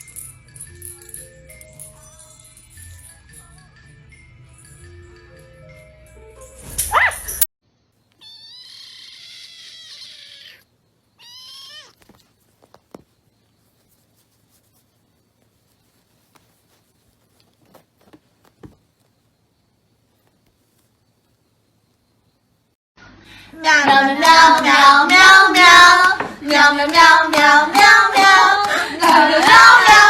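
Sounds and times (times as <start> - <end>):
cat meowing: 8.2 - 12.1.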